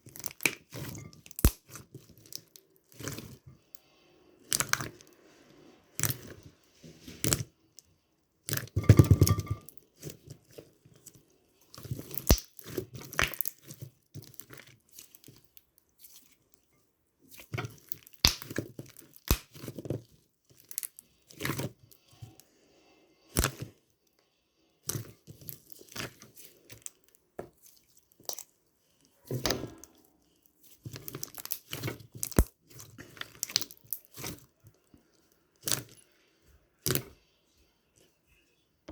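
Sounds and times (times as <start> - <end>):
sticky slime pops and crackles: 0.2 - 2.4, 11.9 - 15.1, 17.4 - 19.8, 23.4 - 23.7, 30.9 - 34.4.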